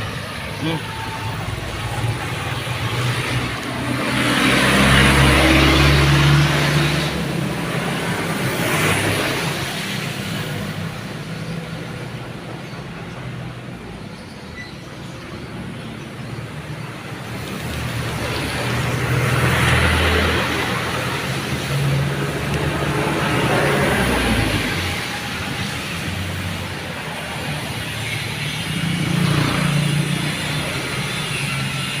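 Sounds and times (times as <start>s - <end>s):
vehicle passing: 0.0s - 10.3s, 17.4s - 32.0s
engine rumble and tyre noise: 0.0s - 32.0s.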